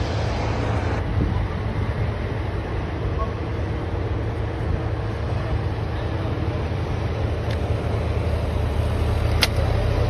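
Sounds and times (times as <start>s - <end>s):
wind rumble on microphone: 0.0s - 5.8s
storm-force wind: 0.0s - 10.0s.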